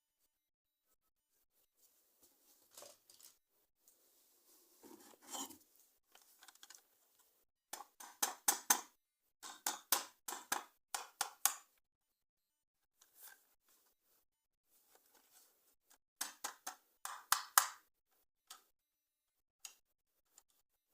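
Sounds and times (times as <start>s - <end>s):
plastic packaging rustling: 2.6s - 3.4s.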